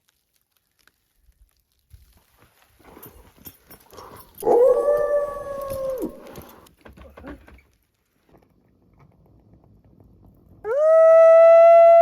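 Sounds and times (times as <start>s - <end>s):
faint clicks and rustles: 0.0s - 10.6s
wolf howling: 4.4s - 6.3s, 10.6s - 12.0s.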